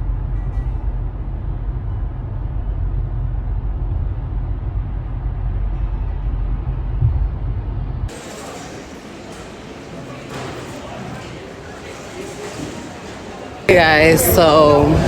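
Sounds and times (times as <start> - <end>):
vehicle rumble in motion: 0.0 - 8.1.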